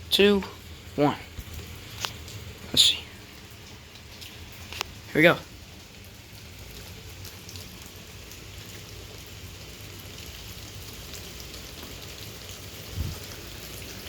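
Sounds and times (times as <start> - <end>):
heavy rain pouring: 0.0 - 14.0.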